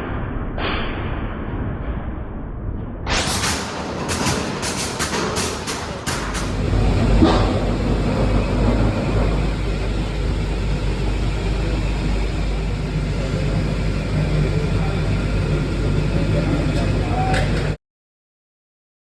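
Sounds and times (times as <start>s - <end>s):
machinery low hum: 3.1s - 17.8s
machinery rushing noise: 3.1s - 17.8s.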